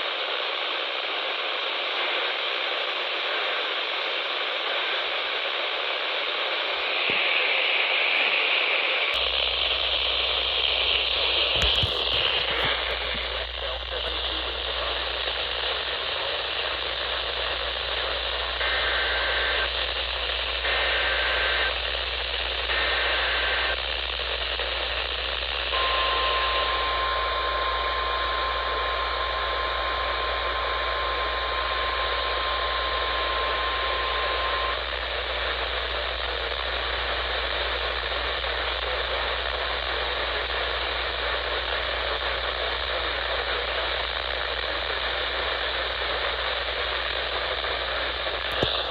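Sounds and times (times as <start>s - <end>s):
radio static: 0.0s - 48.9s
steady warning alarm tone: 25.8s - 31.8s.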